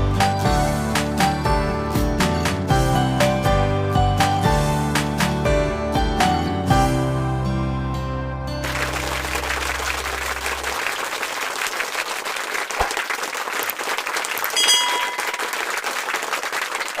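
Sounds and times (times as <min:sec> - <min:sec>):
crowd applauding: 0:08.6 - 0:17.0
brief high tone: 0:14.6 - 0:15.6.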